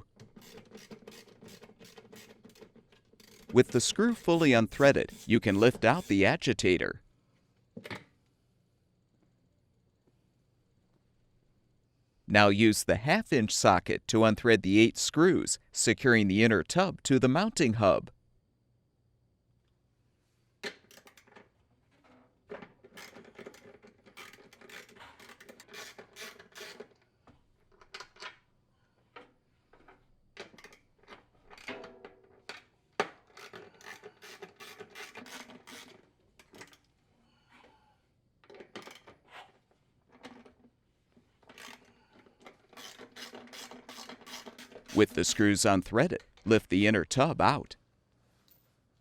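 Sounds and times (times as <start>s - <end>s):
socket wrench ratcheting: 0.2s - 6.1s, 22.9s - 26.9s, 33.3s - 36.8s, 41.5s - 45.0s.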